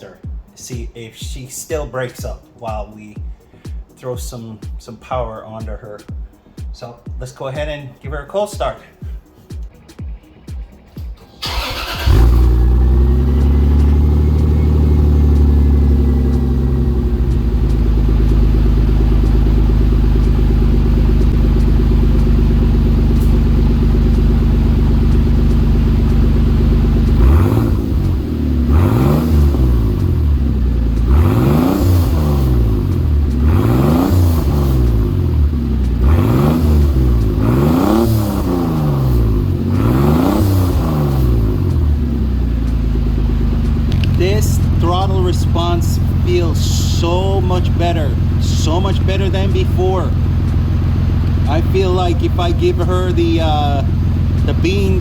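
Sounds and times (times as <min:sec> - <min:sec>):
car engine idling: 0:10.8 - 0:55.0
engine revving: 0:11.2 - 0:55.0.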